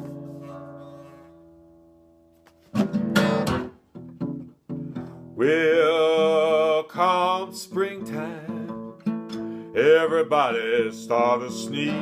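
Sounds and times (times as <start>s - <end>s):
acoustic guitar chord ringing: 0.0s - 12.0s
hard guitar strums: 2.7s - 5.3s.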